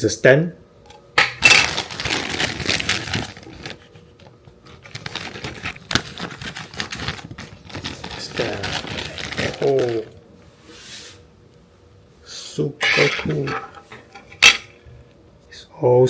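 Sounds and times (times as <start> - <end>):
plastic packaging crinkling: 1.4 - 10.2.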